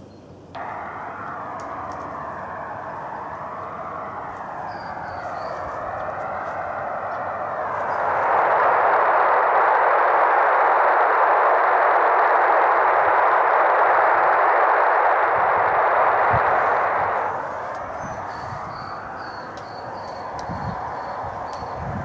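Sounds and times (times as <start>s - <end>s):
radio receiver hiss: 0.6s - 22.0s.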